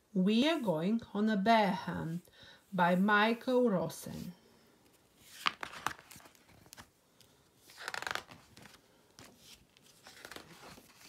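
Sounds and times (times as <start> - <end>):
book pages turning: 5.2 - 11.0.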